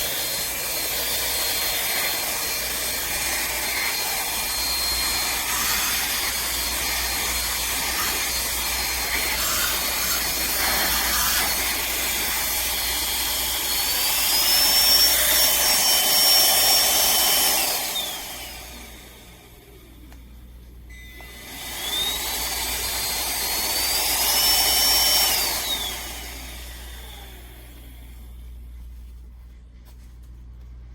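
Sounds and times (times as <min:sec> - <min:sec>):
handheld vacuum motor whine: 0:00.0 - 0:20.2, 0:20.9 - 0:28.4.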